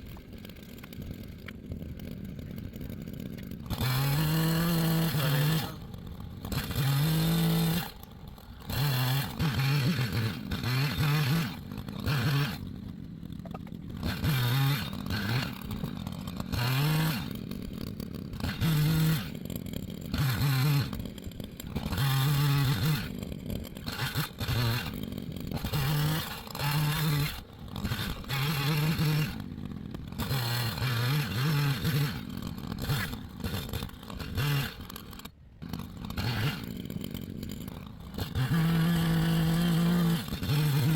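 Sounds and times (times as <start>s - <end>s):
chainsaw cutting logs: 0.0s - 40.9s.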